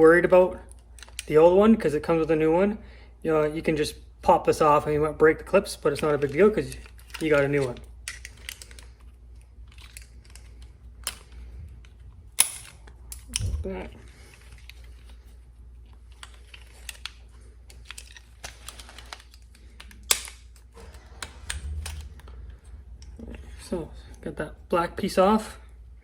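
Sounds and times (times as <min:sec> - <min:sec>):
plastic clips clicking and snapping: 0:00.7 - 0:01.3, 0:09.7 - 0:13.5, 0:16.1 - 0:22.3.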